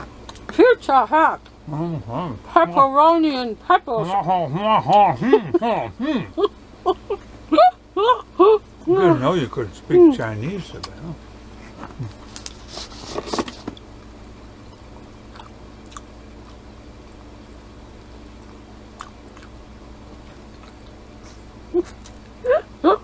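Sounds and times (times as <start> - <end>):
steady low hum: 0.0 - 23.0
person speaking: 8.8 - 11.2
chewing and biting pizza: 14.6 - 17.3, 18.2 - 22.4.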